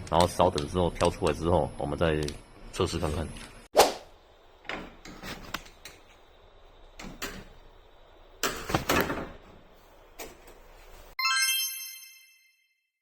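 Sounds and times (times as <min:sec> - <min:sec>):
bell-like chime: 0:11.2 - 0:12.9.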